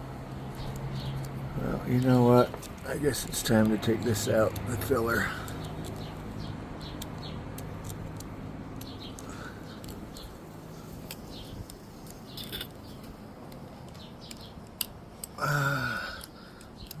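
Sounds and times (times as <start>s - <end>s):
hand tools clicking and scraping: 0.6s - 6.1s, 6.9s - 17.0s.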